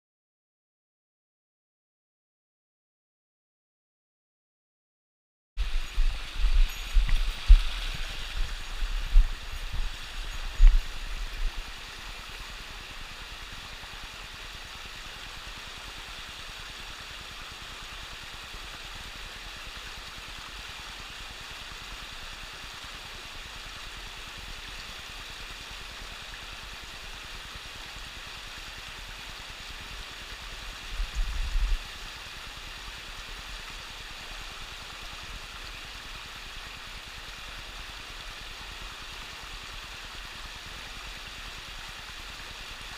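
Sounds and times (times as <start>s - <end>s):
stream water rushing: 5.6s - 42.9s.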